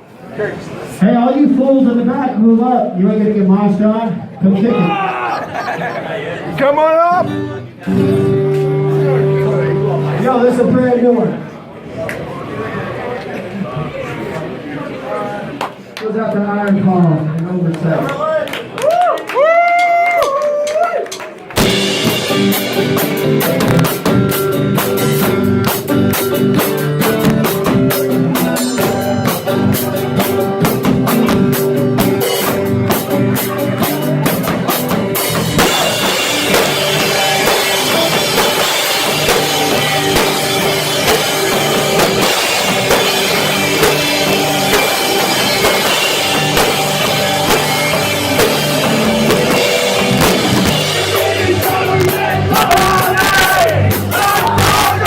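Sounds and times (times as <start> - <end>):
rock band playing loud: 4.6 - 11.0, 21.1 - 55.0
rapid drum hits: 21.6 - 55.0.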